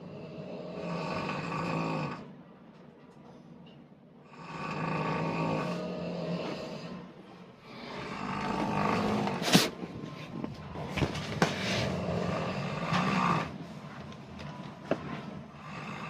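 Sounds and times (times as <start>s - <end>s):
person snoring loudly: 0.0s - 2.3s, 4.2s - 9.8s, 11.7s - 13.6s, 15.4s - 16.0s.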